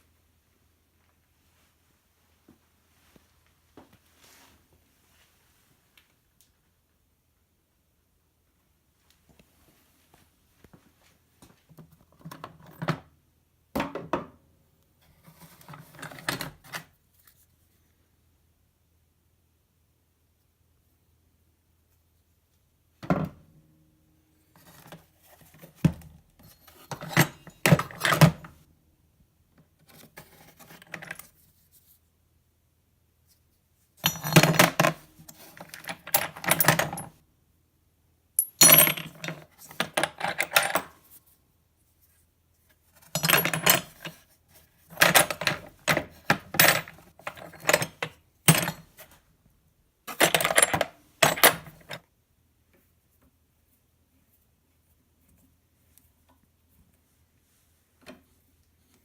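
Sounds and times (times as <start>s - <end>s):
small metal parts clinking: 34.0s - 37.1s, 38.4s - 40.9s, 43.1s - 44.2s.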